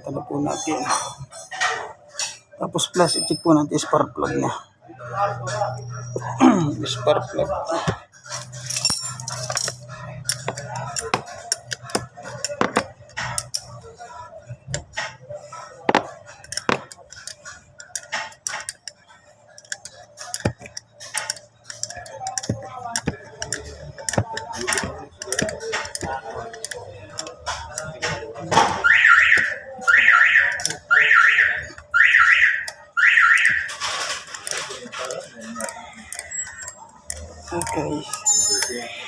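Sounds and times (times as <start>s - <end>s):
hand tools clinking on metal: 1.0s - 3.9s, 8.3s - 13.8s, 15.9s - 28.8s, 33.4s - 39.0s.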